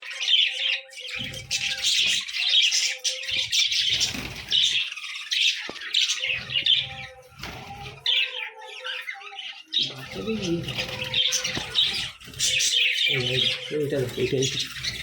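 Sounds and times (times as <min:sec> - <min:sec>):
cage birds chirping and squawking: 0:00.0 - 0:15.0.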